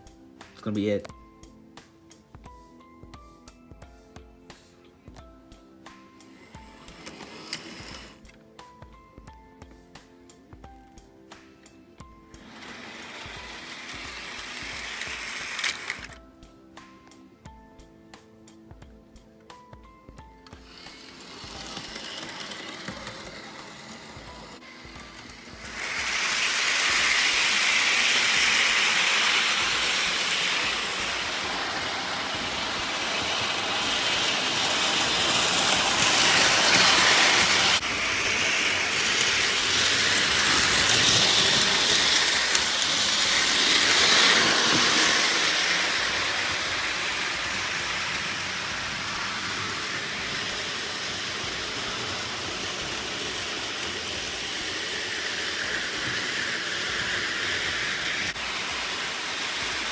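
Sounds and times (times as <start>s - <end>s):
electric model trains running: 6.3s - 8.2s, 12.4s - 16.2s, 20.5s - 59.9s.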